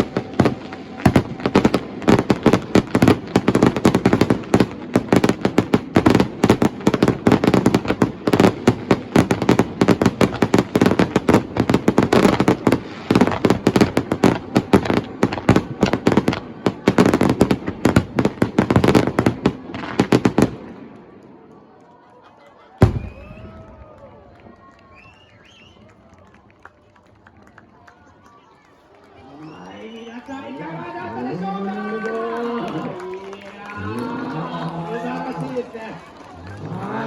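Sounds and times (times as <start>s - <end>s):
fireworks bursting and crackling: 0.0s - 21.6s, 22.7s - 26.0s.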